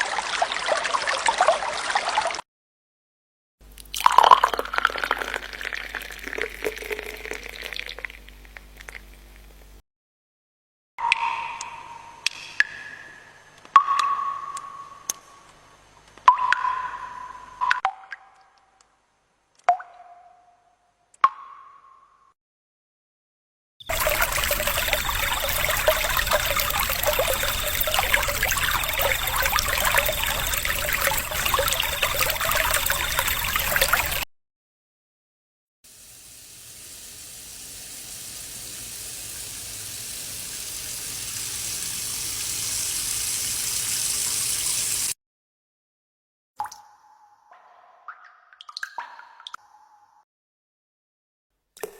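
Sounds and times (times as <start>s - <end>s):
running splashing water: 4.1s - 9.1s, 23.9s - 34.2s, 35.9s - 45.2s
water drop plop: 11.0s - 13.2s, 23.9s - 34.2s, 47.6s - 49.9s
rushing water: 23.9s - 34.2s.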